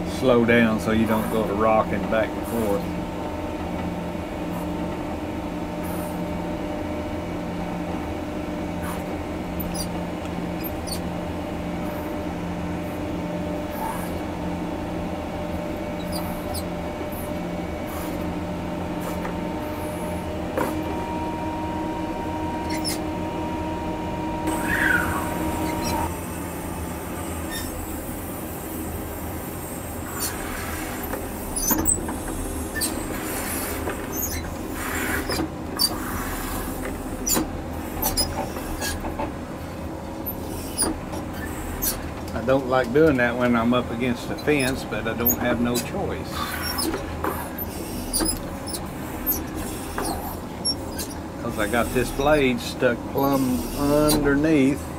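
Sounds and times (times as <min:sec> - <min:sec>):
diesel engine drone: 0:00.0 - 0:54.9
brief rising squeak: 0:09.6 - 0:09.9, 0:16.0 - 0:16.7, 0:22.6 - 0:23.0, 0:24.5 - 0:26.1, 0:34.1 - 0:36.2.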